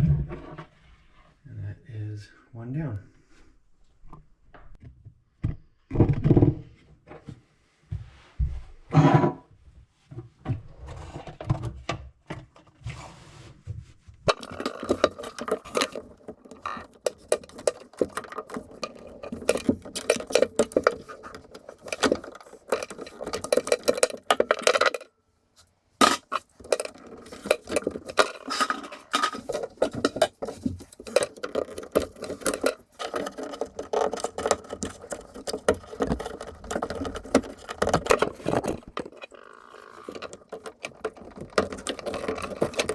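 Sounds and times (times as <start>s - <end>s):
metallic clicking and scraping: 14.3s - 42.9s.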